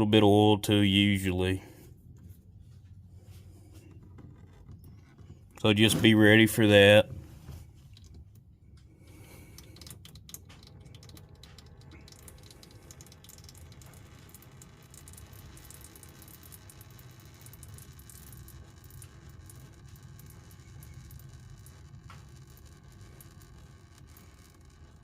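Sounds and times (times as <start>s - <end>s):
oil filter clicks and rattles: 7.2s - 24.9s.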